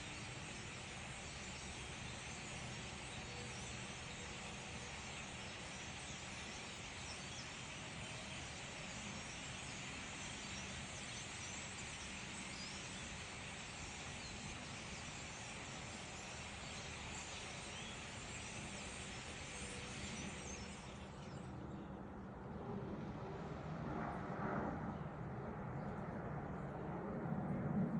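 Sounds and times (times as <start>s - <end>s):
flock of birds chattering: 0.0s - 21.5s.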